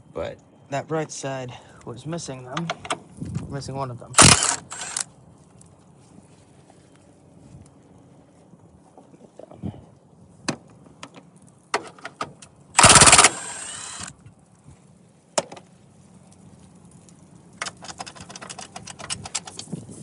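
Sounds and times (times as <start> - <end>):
loud burst: 4.2 - 5.0, 12.8 - 14.1
ratchet clicking: 4.2 - 5.1, 12.8 - 14.1
metal clicks and knocks: 17.6 - 19.7.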